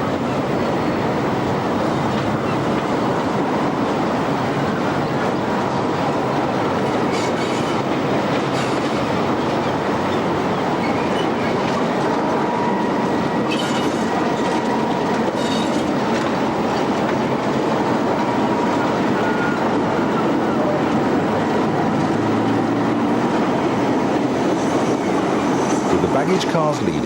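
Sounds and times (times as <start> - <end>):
train wheels clickety-clack: 0.6 - 27.0
high wheel squeals: 7.0 - 16.0.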